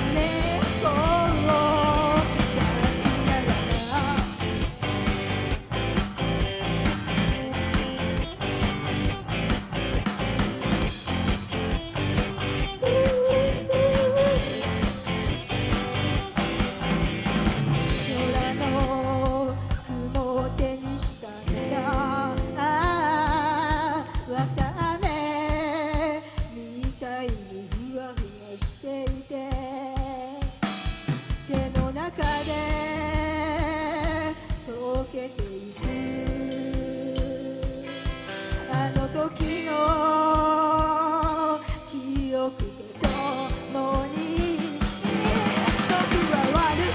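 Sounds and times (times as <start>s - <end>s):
bass guitar: 0.0s - 24.9s, 32.2s - 34.8s, 35.8s - 40.9s, 43.0s - 46.9s
electric guitar: 0.0s - 26.6s, 32.1s - 46.9s
drum kit beat: 0.0s - 46.9s.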